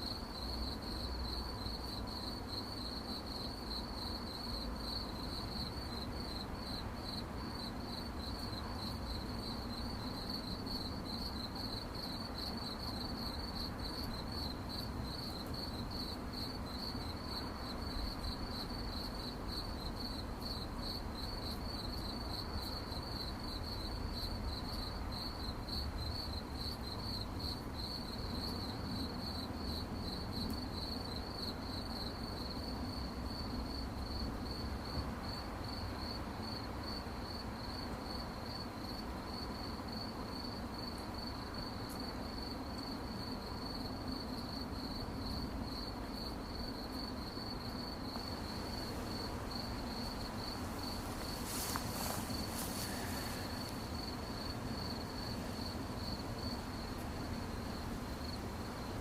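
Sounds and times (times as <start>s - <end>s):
crickets chirping: 0.0s - 59.0s.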